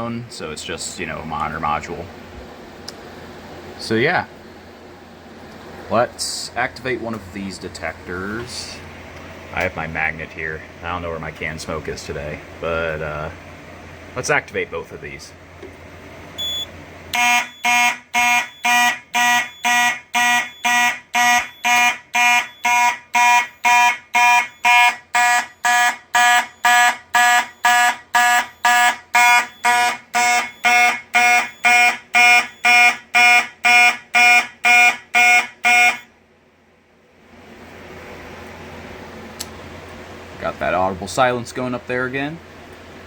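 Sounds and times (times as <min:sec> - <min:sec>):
fire alarm horn blasts: 0:16.4 - 0:36.2.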